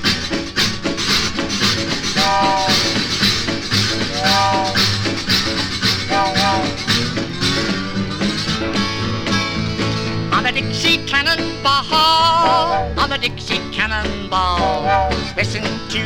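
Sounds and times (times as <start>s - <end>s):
shuffle rhythm with rattling chug: 0.0s - 16.0s
steel guitar sliding chords: 0.0s - 16.0s.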